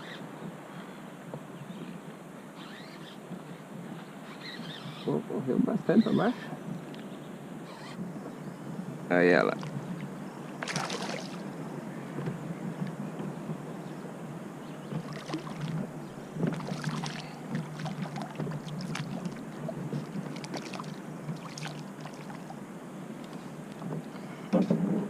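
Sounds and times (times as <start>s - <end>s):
water lapping around a kayak: 9.5s - 25.0s
short splashes: 10.6s - 11.5s, 15.0s - 22.6s.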